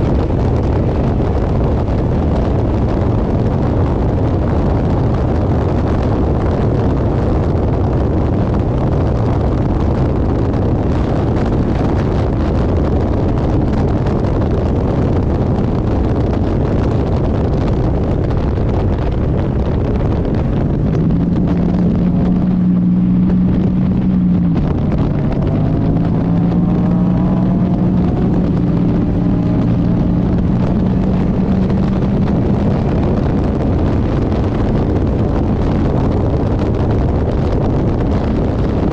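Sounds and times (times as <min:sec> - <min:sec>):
race car engine running: 0:00.0 - 0:38.9
wind noise on microphone: 0:00.0 - 0:38.9.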